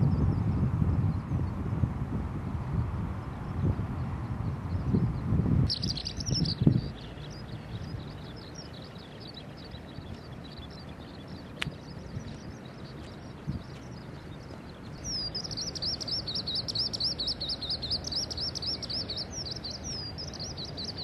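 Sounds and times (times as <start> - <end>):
low microphone rumble: 0.0 - 21.0
skylark singing: 4.4 - 21.0.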